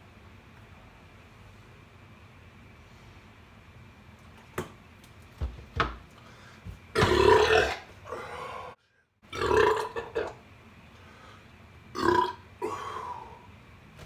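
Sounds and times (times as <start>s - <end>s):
man burping loudly: 7.0s - 7.9s, 9.3s - 10.4s, 11.9s - 13.0s.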